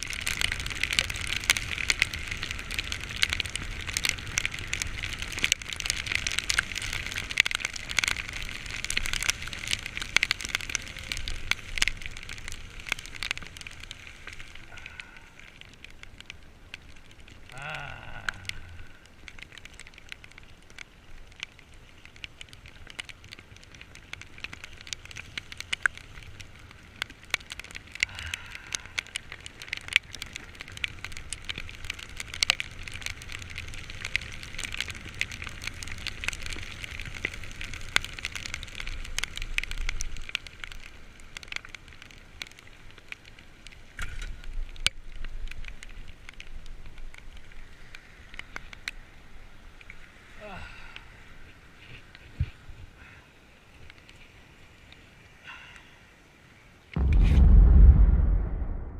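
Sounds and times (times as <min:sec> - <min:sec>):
heavy rain crackling: 0:00.0 - 0:51.3, 0:56.9 - 0:58.9
low rumble: 0:57.0 - 0:58.9.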